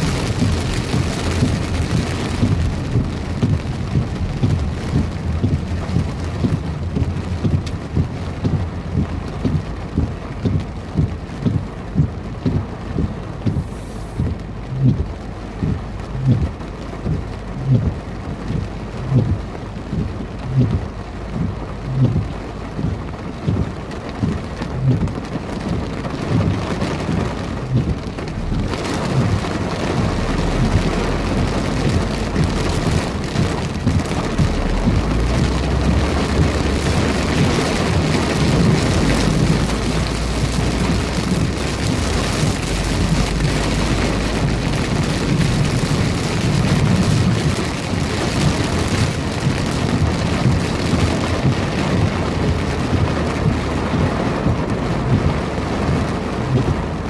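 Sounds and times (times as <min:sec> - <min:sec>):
heavy rain pouring: 0:00.0 - 0:57.0
low thunder rumble: 0:00.0 - 0:57.0.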